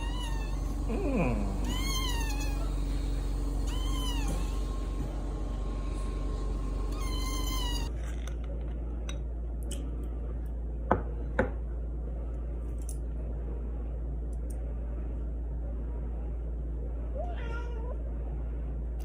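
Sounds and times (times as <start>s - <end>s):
cat meowing: 0.0s - 0.6s, 1.6s - 2.8s, 3.7s - 4.6s, 6.9s - 7.9s.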